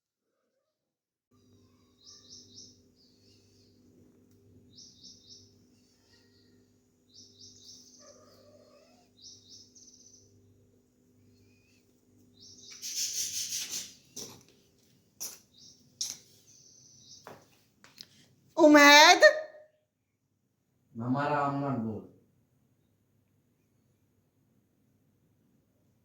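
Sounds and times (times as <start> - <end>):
small birds chirping: 1.4 - 19.3.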